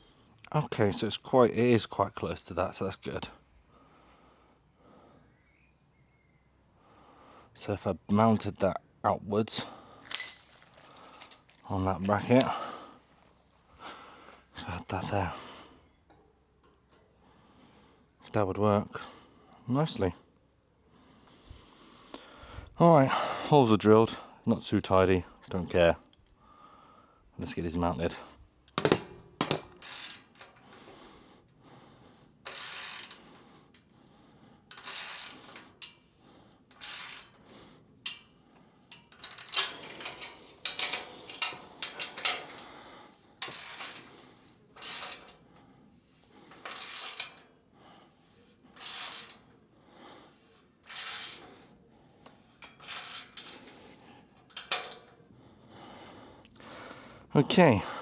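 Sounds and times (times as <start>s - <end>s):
small metallic clinks: 9.9s - 12.6s, 28.6s - 30.9s, 32.4s - 33.9s, 34.6s - 36.1s, 36.7s - 37.4s, 38.0s - 42.8s, 43.4s - 45.5s, 46.4s - 47.6s, 48.7s - 49.6s, 50.5s - 55.4s
ratchet spanner clicking: 10.0s - 12.5s, 28.7s - 30.6s, 32.4s - 33.2s, 34.7s - 36.0s, 36.7s - 37.4s, 38.9s - 42.7s, 43.4s - 44.1s, 44.8s - 45.4s, 46.6s - 47.4s, 48.7s - 49.4s, 50.8s - 51.4s, 52.6s - 53.8s, 54.5s - 55.1s.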